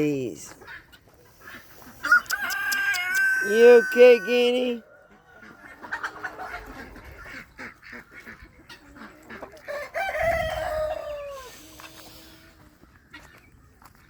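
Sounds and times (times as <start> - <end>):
chickens clucking: 0.5 - 14.0
rooster crowing: 2.0 - 5.4, 9.7 - 11.5.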